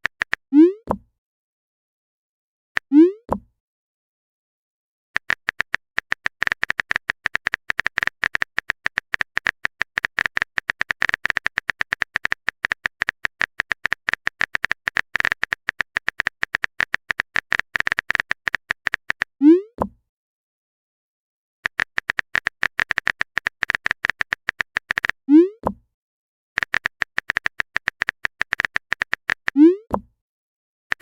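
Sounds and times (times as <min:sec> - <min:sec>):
phone keyboard typing clicks: 0:00.0 - 0:01.0, 0:05.2 - 0:19.3, 0:21.6 - 0:25.8, 0:26.6 - 0:30.1.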